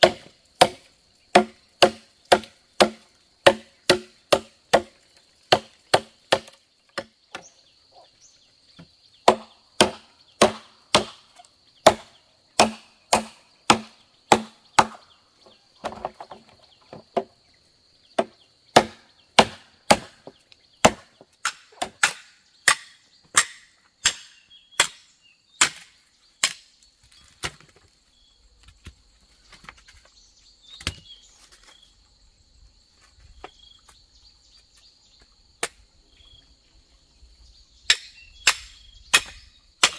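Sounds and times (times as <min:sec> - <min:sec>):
blade chopping bamboo: 0:00.0 - 0:07.4, 0:09.2 - 0:15.0, 0:18.2 - 0:26.7, 0:37.9 - 0:39.9.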